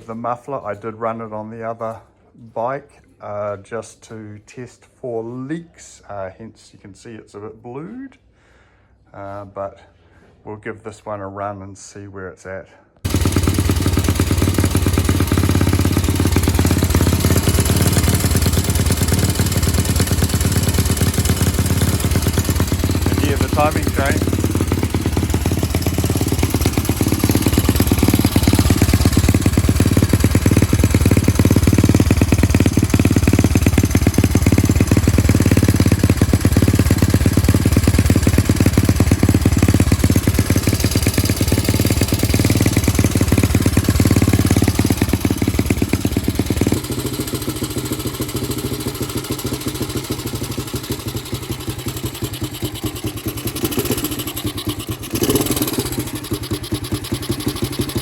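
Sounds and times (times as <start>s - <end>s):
motorcycle engine idling: 13.1s - 58.0s.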